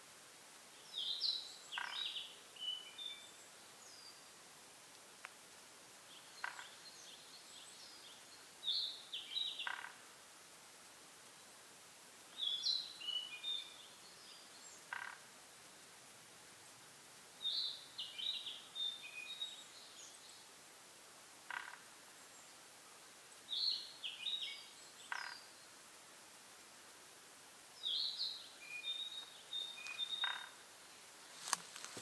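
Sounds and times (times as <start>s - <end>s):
faint outdoor hiss: 0.0s - 32.0s
bird chirping: 27.8s - 32.0s.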